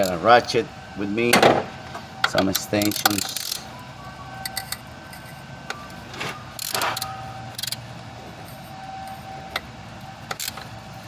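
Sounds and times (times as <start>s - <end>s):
steady background hum: 0.0s - 11.0s
metal scraping: 1.9s - 11.0s
ratchet metal clicks: 2.2s - 3.7s, 4.4s - 10.9s.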